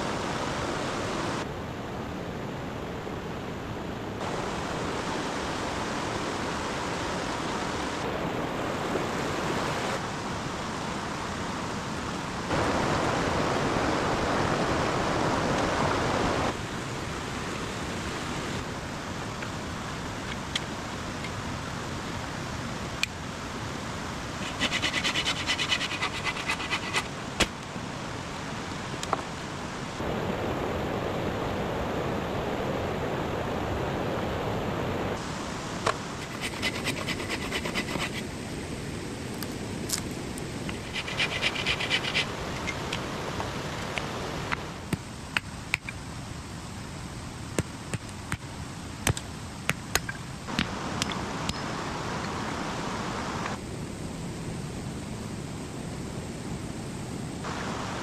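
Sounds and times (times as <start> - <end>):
mountain stream rushing: 0.0 - 53.6, 57.4 - 58.0
scratchy crackling: 24.4 - 27.1, 40.7 - 42.7.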